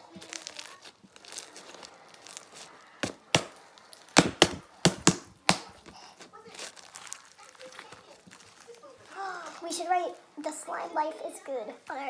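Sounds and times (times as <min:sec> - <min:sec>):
slime squelching: 0:01.2 - 0:03.5, 0:04.2 - 0:07.2
slime popping and snapping: 0:03.0 - 0:03.5, 0:04.2 - 0:05.9.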